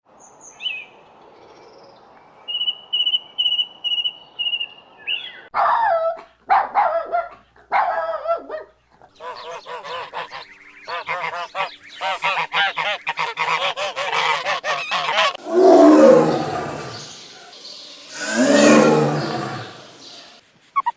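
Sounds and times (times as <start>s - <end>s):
animal calls: 9.2s - 20.4s
low animal call: 15.0s - 20.4s.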